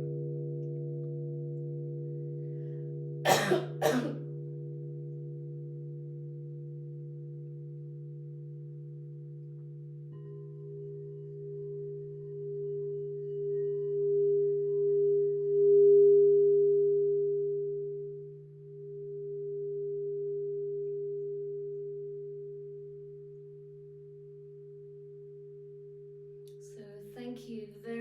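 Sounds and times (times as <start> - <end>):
singing bowls ringing: 4.3 - 26.2.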